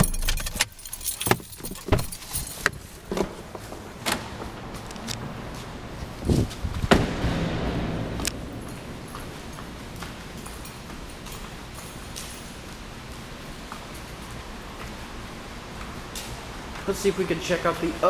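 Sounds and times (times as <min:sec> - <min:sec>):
elevator clicks and clunks: 0:00.0 - 0:17.8
rushing noise: 0:03.9 - 0:18.0.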